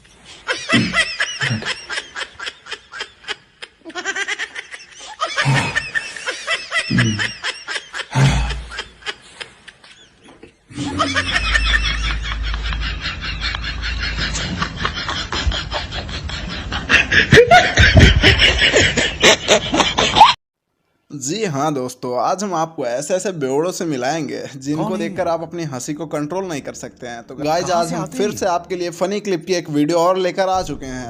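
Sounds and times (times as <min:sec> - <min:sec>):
people laughing and snickering: 0:00.4 - 0:20.4.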